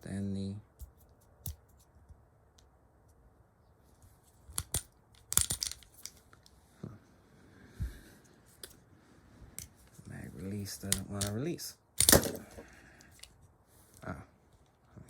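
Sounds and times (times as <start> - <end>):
pistol metallic clicks: 12.0 - 12.4.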